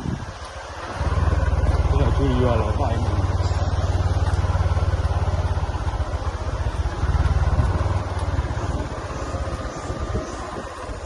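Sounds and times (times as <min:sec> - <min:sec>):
vehicle engine running: 0:00.0 - 0:11.0.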